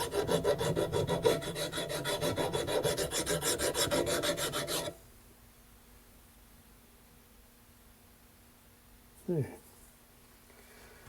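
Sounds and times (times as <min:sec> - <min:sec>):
hand file rasping on steel: 0:00.0 - 0:05.0.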